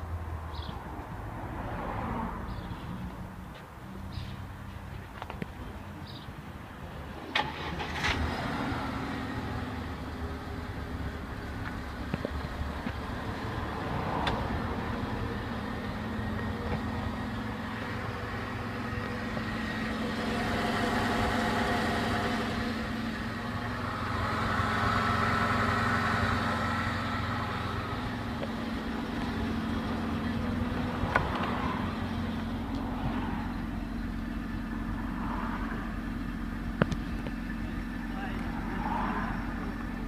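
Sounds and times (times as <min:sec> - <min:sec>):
car engine running: 0:07.3 - 0:40.0.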